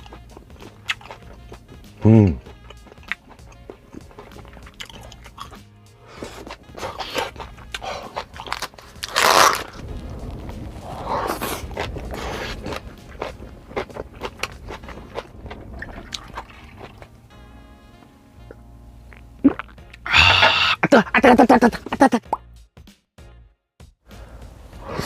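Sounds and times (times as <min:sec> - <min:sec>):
close chewing and biting: 0:00.0 - 0:09.9, 0:10.7 - 0:17.3.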